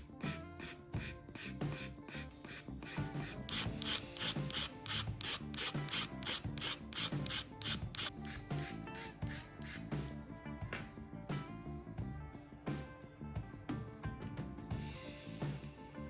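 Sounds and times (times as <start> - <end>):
file rasping on plastic: 0.0 - 9.9
quiet background music: 0.0 - 16.0.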